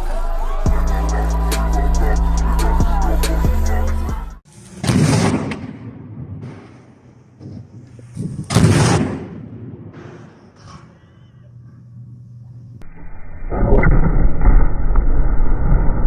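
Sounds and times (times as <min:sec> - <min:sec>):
loud booming blasts: 0:08.5 - 0:10.0.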